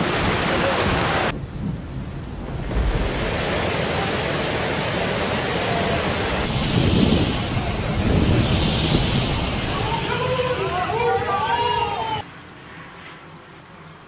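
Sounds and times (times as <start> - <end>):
surf crashing: 0.0 - 11.0
strong wind: 0.0 - 12.2.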